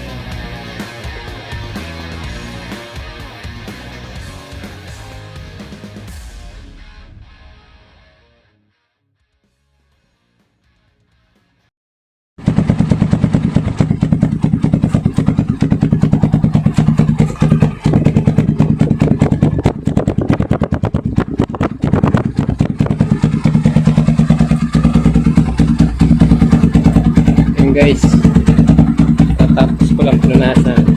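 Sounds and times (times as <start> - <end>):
loud motorcycle exhaust: 12.4 - 30.9.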